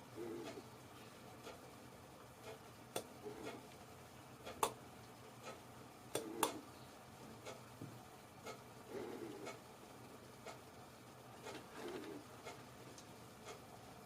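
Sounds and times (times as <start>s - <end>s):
hard disk drive clicking: 4.5s - 6.7s.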